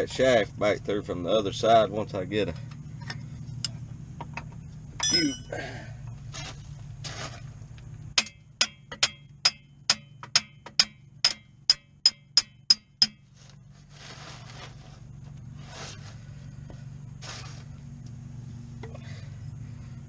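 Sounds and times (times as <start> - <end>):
soft scraping and rustling: 6.2 - 7.9, 13.3 - 18.5.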